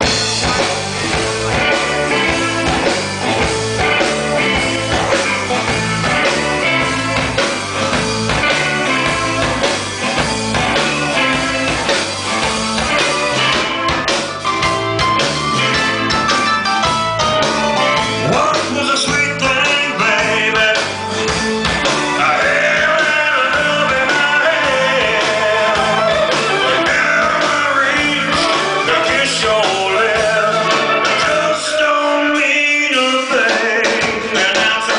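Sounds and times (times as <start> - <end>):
electric guitar: 0.0 - 34.9
live blues-rock band: 0.0 - 34.9
person singing: 18.0 - 21.2, 21.8 - 34.9.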